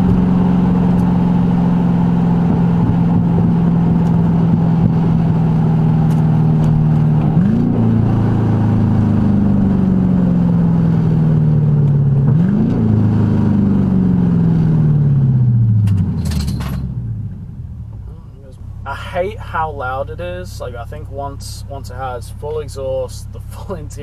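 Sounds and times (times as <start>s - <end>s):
loud car engine revving: 0.0s - 17.5s.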